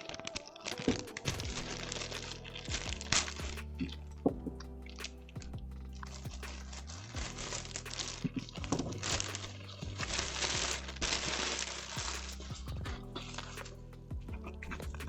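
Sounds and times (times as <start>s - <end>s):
background music: 0.0s - 15.0s
packaging crinkling and rustling: 6.1s - 12.6s.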